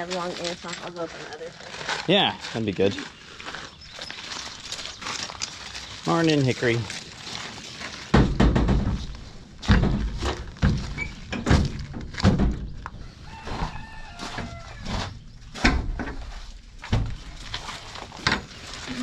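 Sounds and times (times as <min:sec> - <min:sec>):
dull thumps and knocks: 0:08.1 - 0:17.3.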